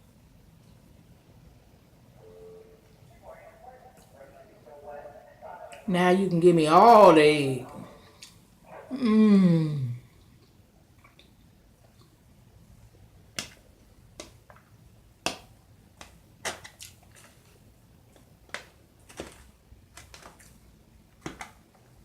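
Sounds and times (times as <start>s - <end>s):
person chewing with mouth smacks: 10.2s - 12.2s.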